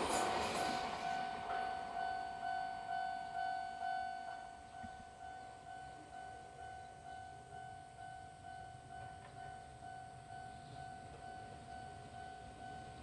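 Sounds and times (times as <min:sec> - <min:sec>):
train rumbling: 0:00.0 - 0:05.8
level-crossing warning bell ringing: 0:00.0 - 0:13.0.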